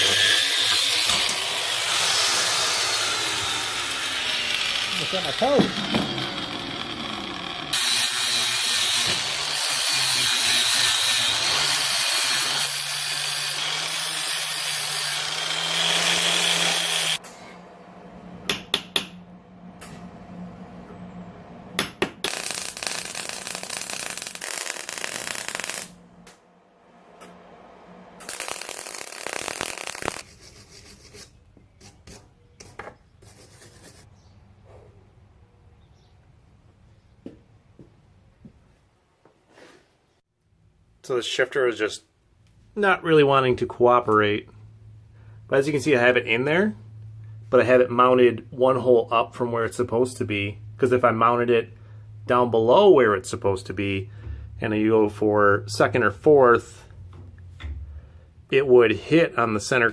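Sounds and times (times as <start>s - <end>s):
power tool on steel: 0.0s - 17.3s, 22.2s - 26.0s, 27.2s - 30.2s.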